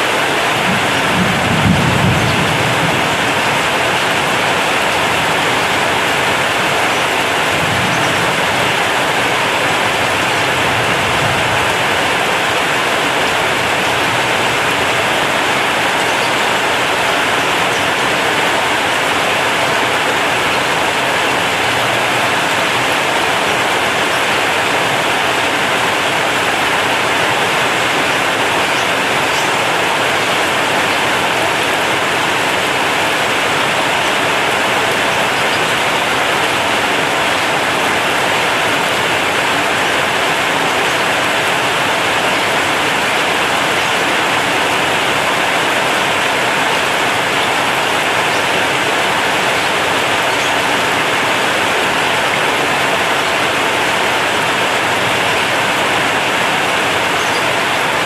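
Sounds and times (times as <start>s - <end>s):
heavy rain on a metal roof: 0.0s - 58.0s.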